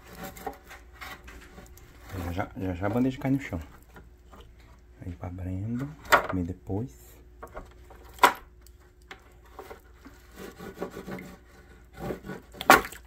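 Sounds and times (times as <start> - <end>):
scraping and rubbing: 0.0 - 4.8, 8.8 - 12.8.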